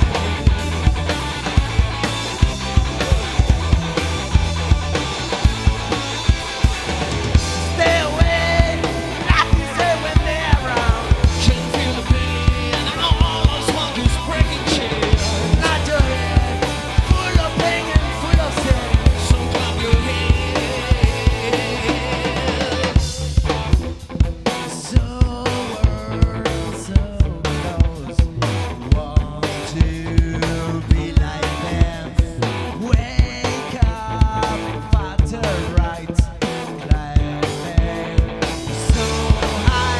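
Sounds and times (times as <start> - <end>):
rock band playing live: 0.0 - 39.9
wavering lead melody: 14.9 - 20.7.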